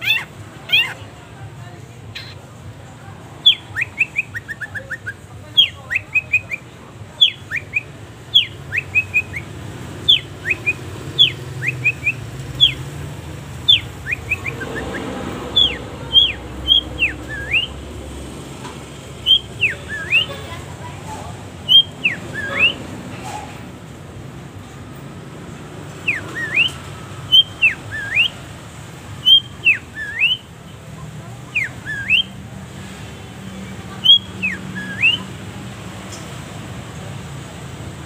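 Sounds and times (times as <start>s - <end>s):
shrike singing whistled notes: 3.4s - 13.0s, 13.6s - 17.8s, 19.2s - 20.5s, 21.6s - 22.9s, 25.9s - 28.5s, 29.2s - 30.6s, 31.4s - 32.4s, 34.0s - 35.3s.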